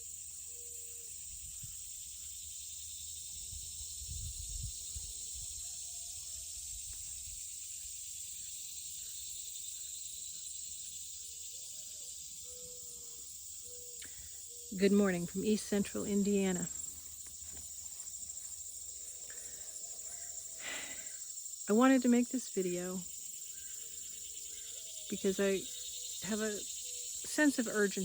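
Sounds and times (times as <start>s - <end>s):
high-pitched insect chorus: 0.0s - 28.0s
wind rumble on microphone: 3.5s - 5.6s.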